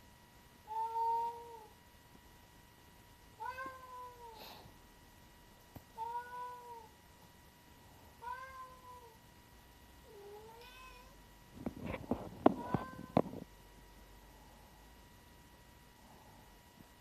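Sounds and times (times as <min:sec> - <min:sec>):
cat meowing: 0:03.4 - 0:04.4, 0:06.0 - 0:06.9, 0:08.2 - 0:09.2, 0:10.1 - 0:11.2.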